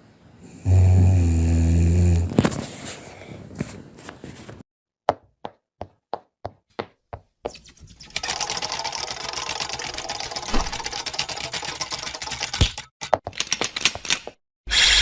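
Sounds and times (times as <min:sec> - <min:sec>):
fast dense clatter of clicks: 0:08.2 - 0:14.2.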